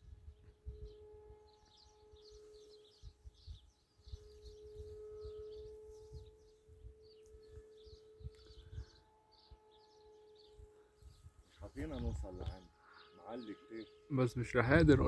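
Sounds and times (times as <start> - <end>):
distant model plane motor humming: 0.0 - 14.3
small birds chirping: 0.0 - 15.0
wind buffeting microphone: 2.9 - 9.1, 11.0 - 12.8, 14.4 - 15.0.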